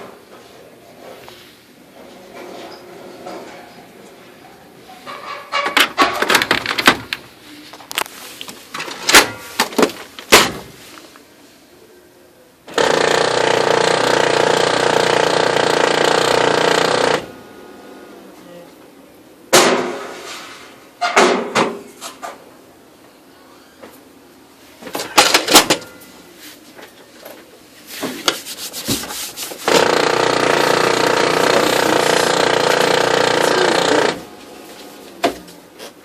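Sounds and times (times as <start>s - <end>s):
printer trays and covers clacking: 5.5s - 7.2s, 8.7s - 10.7s, 24.8s - 26.0s
loud mechanical grinding: 12.7s - 17.3s, 29.7s - 34.3s.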